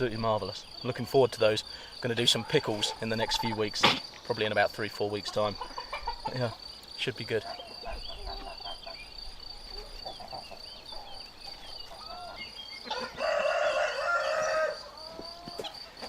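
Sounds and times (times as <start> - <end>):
high cricket trill: 0.0 - 16.0
rooster crowing: 12.2 - 15.6.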